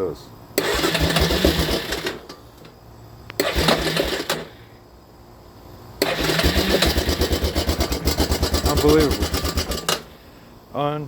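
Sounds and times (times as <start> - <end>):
motorcycle starter cranking: 0.6 - 2.4, 3.4 - 4.5, 6.0 - 10.1
motorcycle engine running: 6.0 - 10.0.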